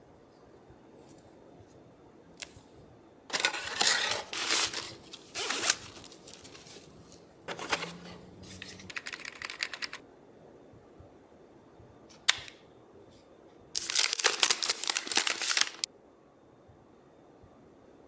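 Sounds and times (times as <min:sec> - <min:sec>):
box scraping and rustling: 0:03.3 - 0:06.9, 0:07.5 - 0:08.8.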